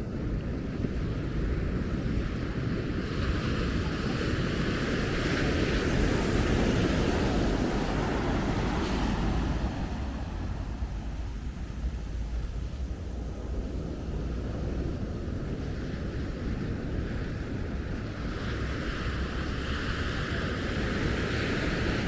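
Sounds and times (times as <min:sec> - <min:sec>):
ocean surf washing on beach: 0:00.0 - 0:22.0
wind buffeting microphone: 0:00.0 - 0:22.0.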